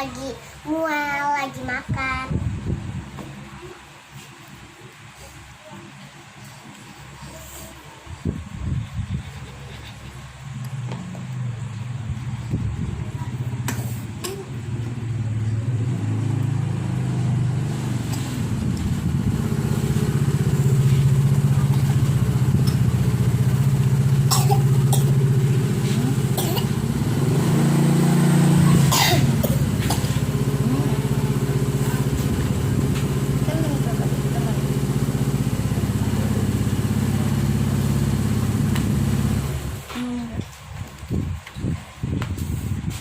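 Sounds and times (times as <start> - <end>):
motor running loudly: 15.7 - 39.9.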